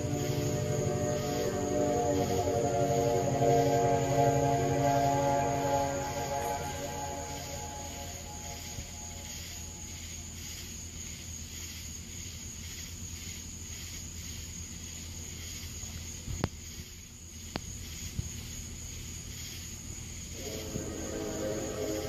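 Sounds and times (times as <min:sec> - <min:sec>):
low trumpet-like humming tone: 0:00.0 - 0:10.0, 0:20.4 - 0:22.0
low hum: 0:00.0 - 0:10.3, 0:20.4 - 0:22.0
high insect buzz: 0:00.0 - 0:11.8, 0:16.6 - 0:22.0.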